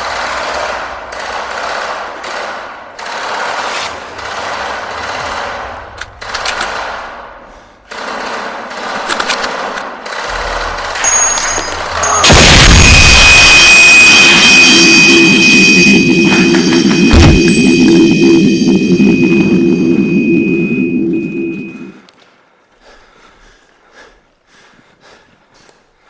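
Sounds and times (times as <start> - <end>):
airsoft guns firing full auto: 0.0 - 7.1
sharp clicks: 6.0 - 7.0, 8.9 - 12.2.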